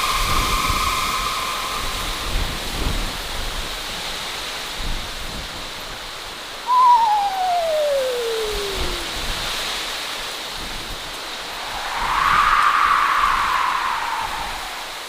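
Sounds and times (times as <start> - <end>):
hissing wind-like noise: 0.0 - 15.0
eerie held tone: 6.7 - 9.3
long wail sliding down in pitch: 6.7 - 9.4, 11.8 - 15.0.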